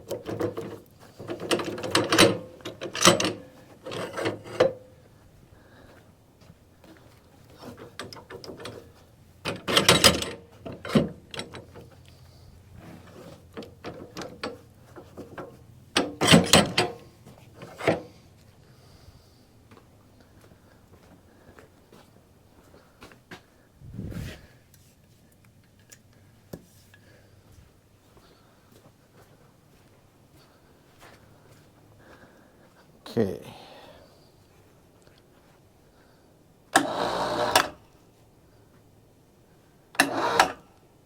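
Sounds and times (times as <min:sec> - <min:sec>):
metallic clanks: 0:00.0 - 0:04.9, 0:07.6 - 0:12.0, 0:13.5 - 0:18.1.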